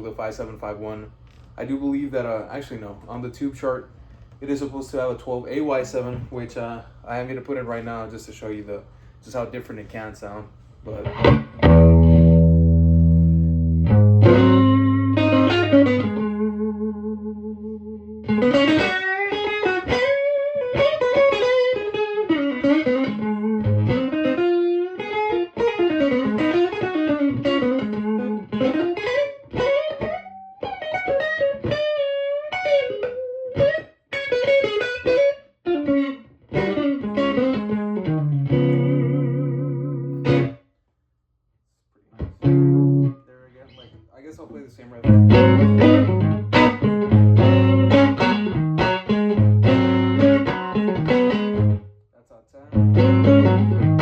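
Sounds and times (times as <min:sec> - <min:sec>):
electric guitar playing: 0:10.9 - 0:40.6, 0:42.2 - 0:44.0, 0:45.0 - 0:51.9, 0:52.7 - 0:54.0.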